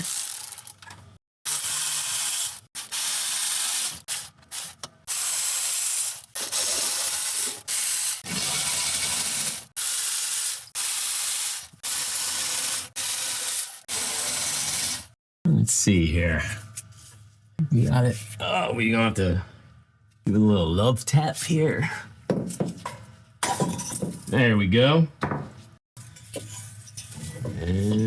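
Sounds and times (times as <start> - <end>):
powered ratchet spinning: 0.0 - 0.8, 1.5 - 15.2.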